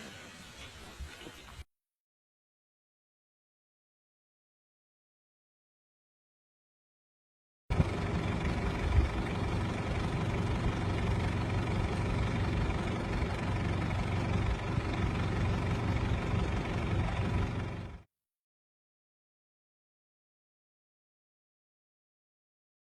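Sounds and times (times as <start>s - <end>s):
vehicle engine idling: 7.7s - 18.0s.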